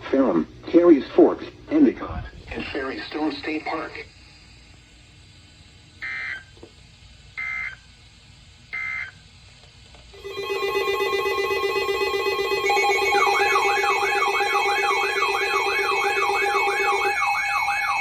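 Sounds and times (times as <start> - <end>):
digital data bursts: 10.2 - 18.0
loud electronic alert tone: 10.2 - 18.0
warbling tone: 10.2 - 18.0.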